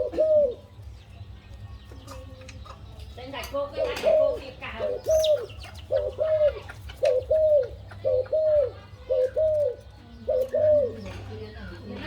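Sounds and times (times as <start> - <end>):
dove cooing: 0.0 - 0.8, 3.6 - 12.0.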